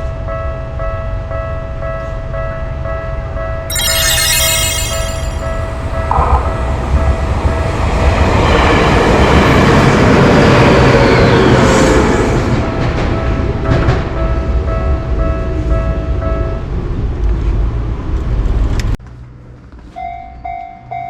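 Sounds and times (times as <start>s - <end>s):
brief high-pitched sound: 3.7s - 5.8s.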